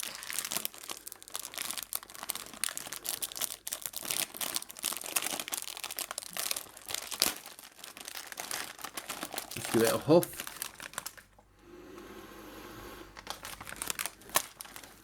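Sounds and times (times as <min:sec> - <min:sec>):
plastic wrapper crinkling: 0:00.0 - 0:11.4, 0:13.2 - 0:15.0.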